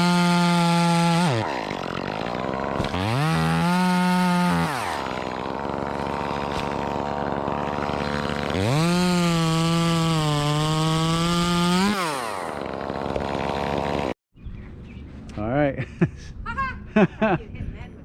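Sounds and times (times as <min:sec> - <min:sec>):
chainsaw engine revving and idling: 0:00.0 - 0:14.2.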